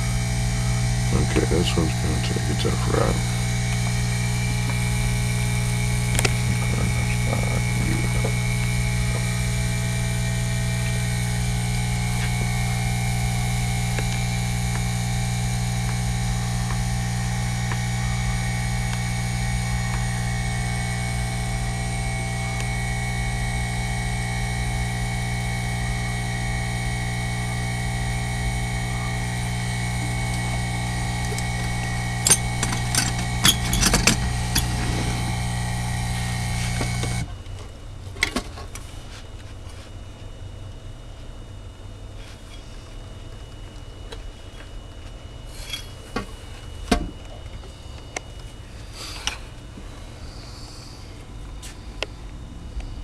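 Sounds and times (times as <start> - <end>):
high-pitched whine: 0.0 - 37.4
electrical hum: 0.0 - 53.0.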